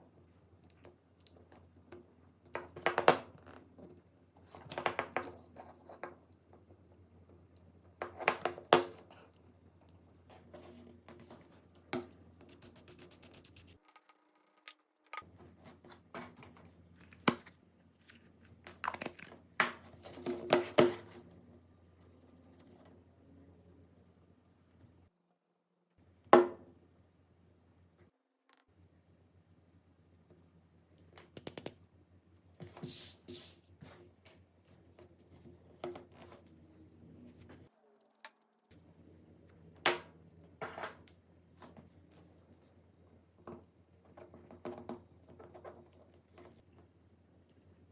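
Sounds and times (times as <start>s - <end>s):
faint low hum: 21.0s - 25.1s.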